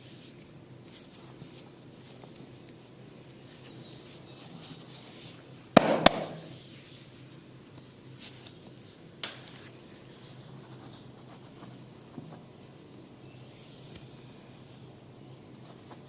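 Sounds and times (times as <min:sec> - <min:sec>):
hands rubbing over scalp: 0:06.1 - 0:06.9.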